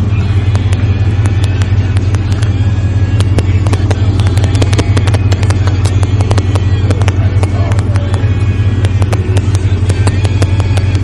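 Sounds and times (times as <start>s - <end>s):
engine idling rumble: 0.0s - 11.0s
sharp ticks: 3.2s - 11.0s.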